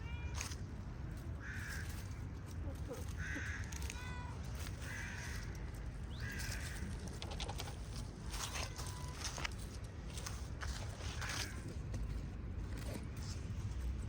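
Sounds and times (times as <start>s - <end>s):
cats meowing: 0.0s - 0.6s, 2.8s - 5.3s, 8.3s - 9.4s.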